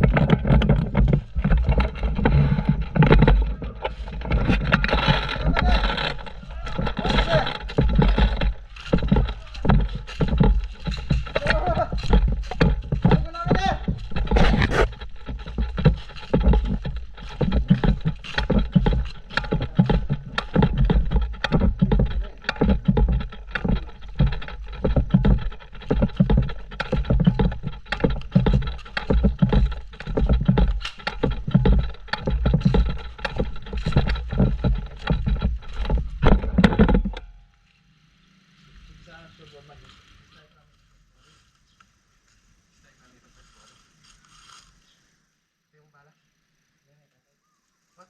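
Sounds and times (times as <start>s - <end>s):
footstep thumps and rustling: 0.0s - 37.3s.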